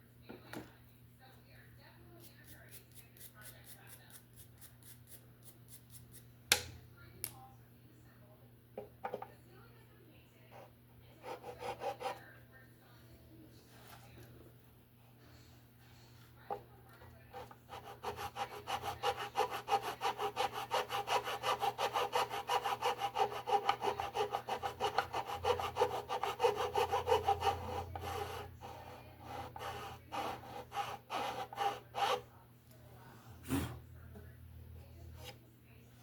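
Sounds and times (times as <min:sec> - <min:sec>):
hand rasping wood: 0:11.2 - 0:12.2, 0:17.3 - 0:32.2.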